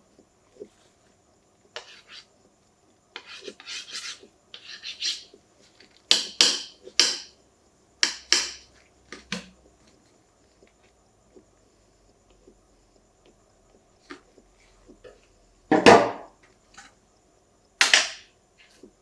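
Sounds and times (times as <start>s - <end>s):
phone case rubbing and scraping: 3.2s - 5.3s.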